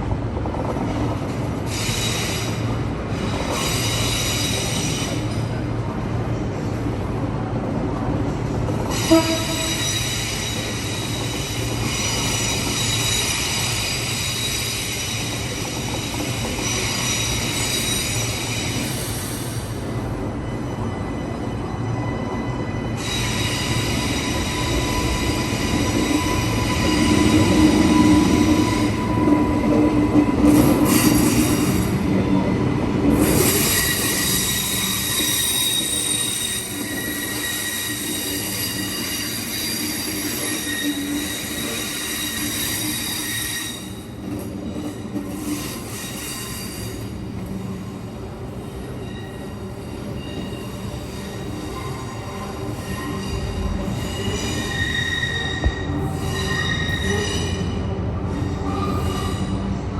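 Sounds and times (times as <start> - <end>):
train rumble: 0.0 - 59.9
train wheels squealing: 1.7 - 5.6, 8.8 - 59.8.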